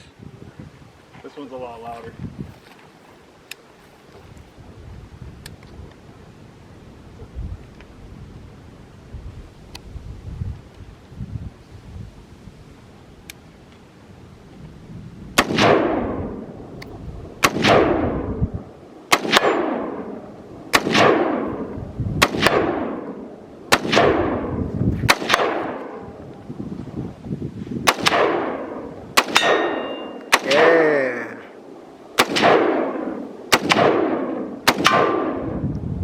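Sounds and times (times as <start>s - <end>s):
gunshots with echo: 15.4s - 16.5s, 17.4s - 18.4s, 19.1s - 26.2s, 27.8s - 30.9s, 32.2s - 35.6s.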